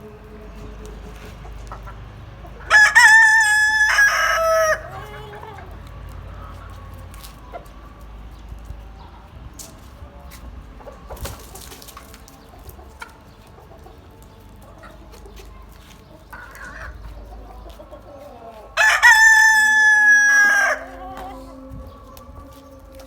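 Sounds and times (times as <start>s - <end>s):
chicken clucking: 0.0s - 23.0s
rooster crowing: 2.7s - 5.7s, 18.7s - 21.7s.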